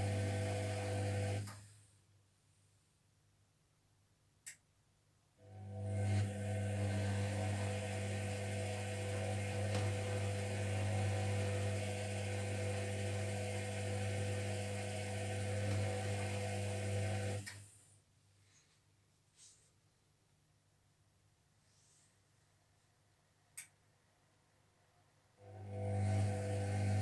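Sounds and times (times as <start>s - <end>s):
washing machine motor humming: 0.0s - 1.4s, 5.6s - 17.5s, 25.4s - 27.0s.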